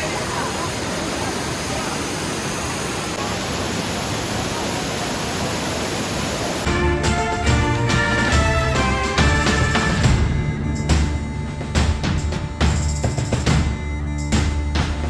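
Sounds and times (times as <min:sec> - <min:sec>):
waterfall roaring: 0:00.0 - 0:13.6
music with a beat: 0:06.7 - 0:15.0.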